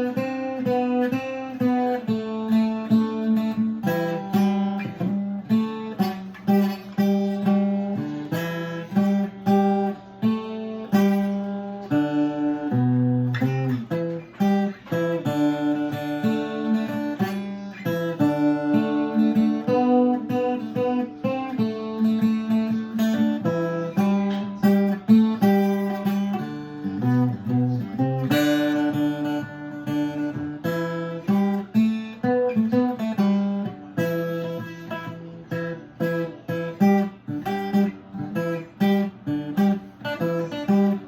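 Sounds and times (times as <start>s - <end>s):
octave mandolin plucked and strummed: 0.0s - 41.0s.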